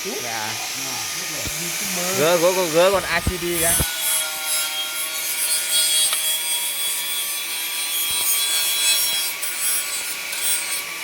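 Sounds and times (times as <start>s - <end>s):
welding arc hissing: 0.0s - 5.0s.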